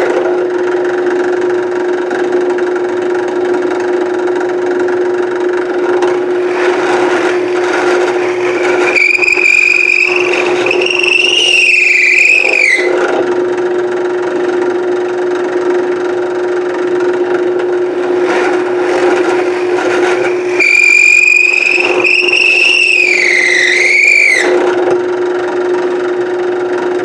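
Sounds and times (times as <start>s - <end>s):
drill press motor humming: 5.8s - 13.4s, 17.3s - 25.0s
drill bit squealing in wood: 5.9s - 13.3s, 17.8s - 25.0s.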